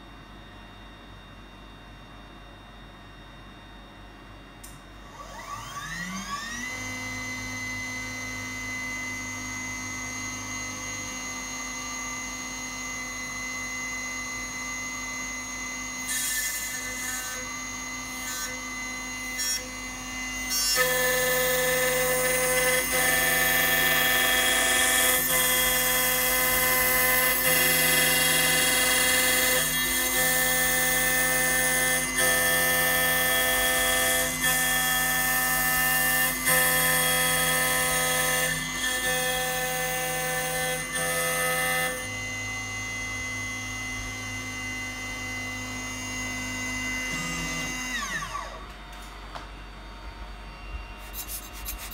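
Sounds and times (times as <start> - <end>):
milling spindle whine: 5.0 - 48.8
hissing grind of cutter: 51.0 - 51.9.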